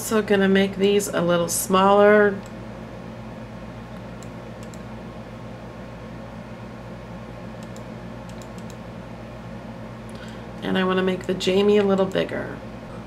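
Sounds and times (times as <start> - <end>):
steady electrical hum: 0.0 - 13.0
computer mouse clicking: 3.9 - 4.9, 7.6 - 8.8.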